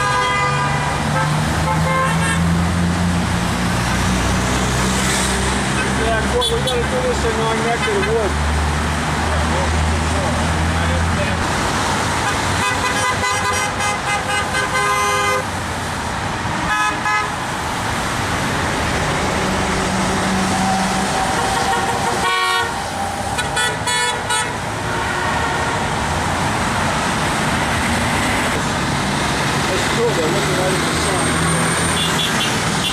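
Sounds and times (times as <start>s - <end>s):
car horns honking: 0.0s - 2.6s, 5.8s - 8.3s, 12.2s - 15.6s, 16.6s - 17.5s, 20.4s - 26.1s, 31.7s - 32.9s
highway traffic rushing: 0.0s - 32.9s.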